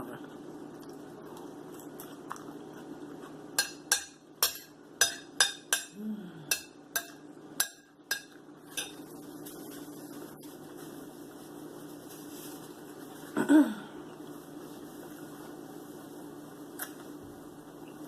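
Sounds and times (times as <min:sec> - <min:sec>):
steady low hum: 0:00.0 - 0:18.0
dishes and utensils clinking: 0:03.6 - 0:09.2.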